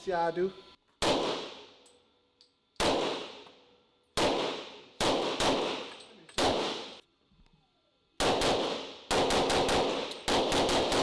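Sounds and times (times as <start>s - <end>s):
gunshots echoing indoors: 2.8s - 3.4s, 4.2s - 7.0s, 8.2s - 11.0s.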